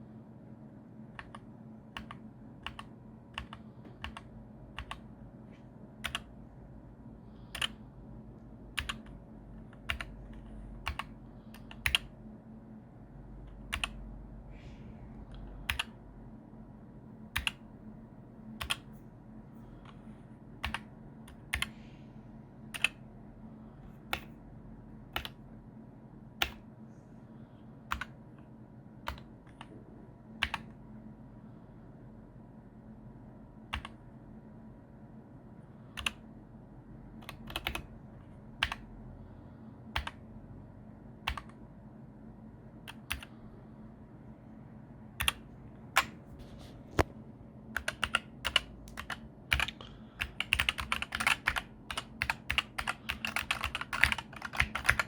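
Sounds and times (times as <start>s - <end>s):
faint low hum: 0.0s - 55.0s
mechanical keyboard clacks: 47.8s - 55.0s.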